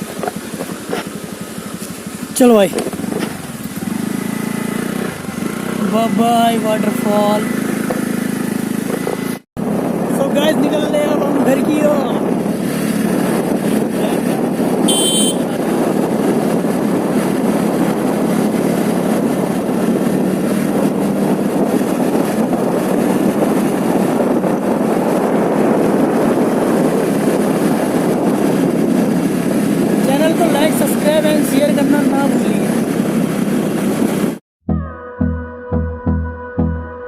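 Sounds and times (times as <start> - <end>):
scooter engine running: 0.0 - 34.4.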